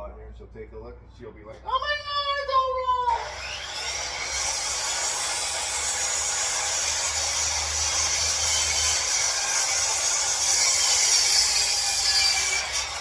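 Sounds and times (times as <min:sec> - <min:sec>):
power tool whirring: 0:03.1 - 0:13.0.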